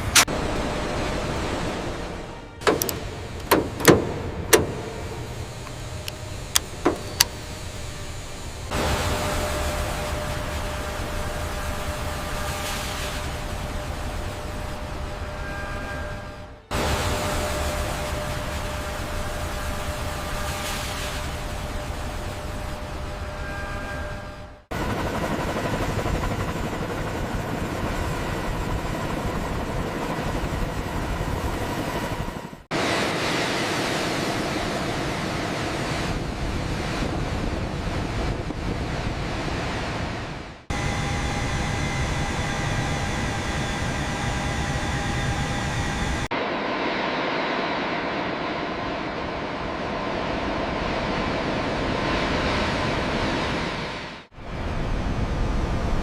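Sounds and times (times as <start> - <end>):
dense mechanical noise: 0.0 - 46.8
jet engines running: 0.0 - 56.0.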